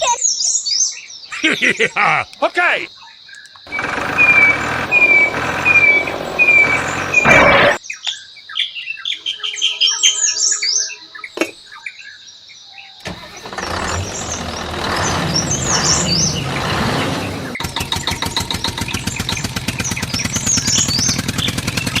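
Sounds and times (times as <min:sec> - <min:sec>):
birds chirping: 0:00.0 - 0:22.0
engine running rough: 0:03.7 - 0:07.8, 0:13.0 - 0:22.0.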